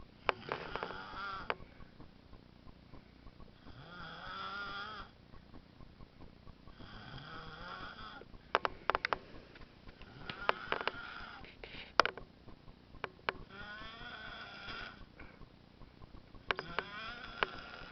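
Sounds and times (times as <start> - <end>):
baby snoring: 0.3 - 1.5, 3.6 - 5.1, 6.8 - 8.3, 10.0 - 11.5, 13.4 - 15.0, 16.6 - 17.9
sharp clicks: 0.3 - 3.6, 7.6 - 17.9.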